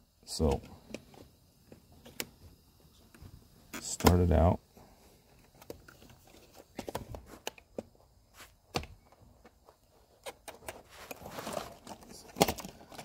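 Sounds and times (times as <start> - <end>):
scraping rustle: 10.0 - 13.0
plastic parts clicking: 10.2 - 13.0.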